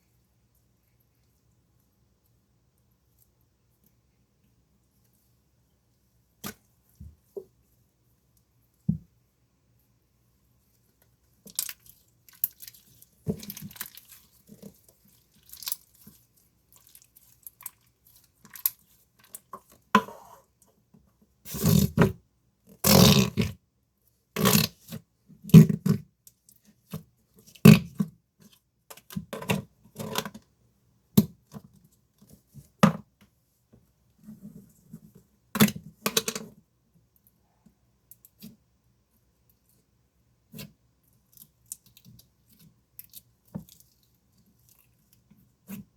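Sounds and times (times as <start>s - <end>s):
slime squishing by hand: 11.4s - 20.3s.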